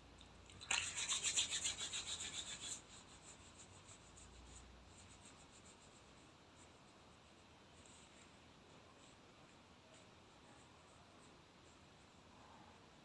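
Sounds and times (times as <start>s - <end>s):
hands rubbing together: 0.7s - 2.8s.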